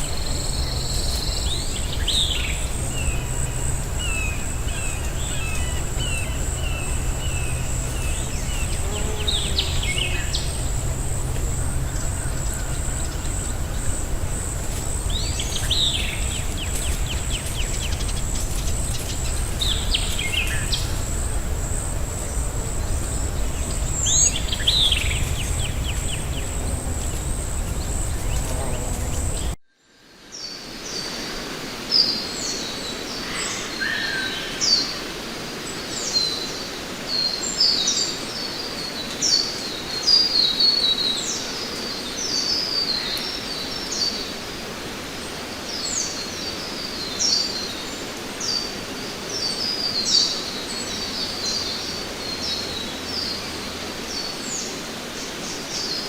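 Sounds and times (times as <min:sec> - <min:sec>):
birds chirping: 0:00.0 - 0:29.6
low rumble: 0:00.0 - 0:29.6
pulsing insect trill: 0:00.0 - 0:29.6.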